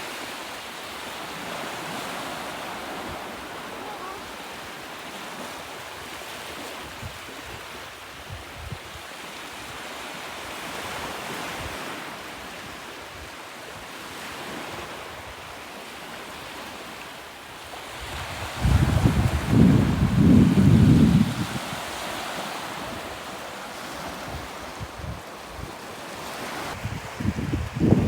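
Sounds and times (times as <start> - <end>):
sea surf washing ashore: 0.0 - 28.0
wind buffeting microphone: 17.9 - 25.8, 26.4 - 28.0.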